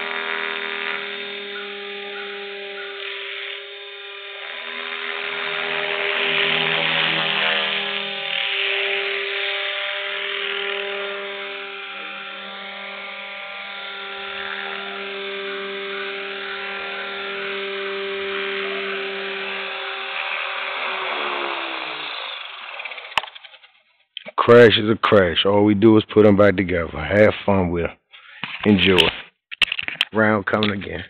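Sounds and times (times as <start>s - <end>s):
model helicopter motor whine: 0.0s - 23.9s.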